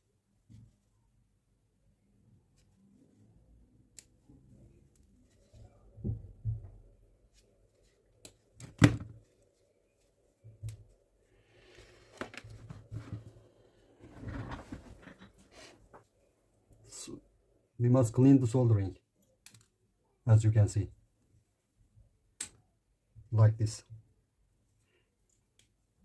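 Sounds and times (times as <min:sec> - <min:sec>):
scraping and rustling: 0:11.5 - 0:16.0.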